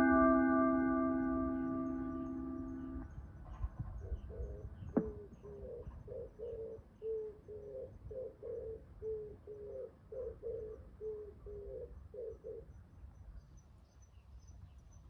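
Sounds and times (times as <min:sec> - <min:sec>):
faint high chirping: 0:00.0 - 0:07.9.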